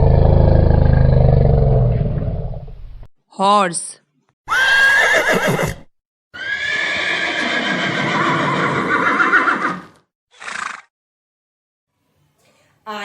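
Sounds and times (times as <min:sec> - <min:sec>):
horse neighing: 0:04.5 - 0:10.9.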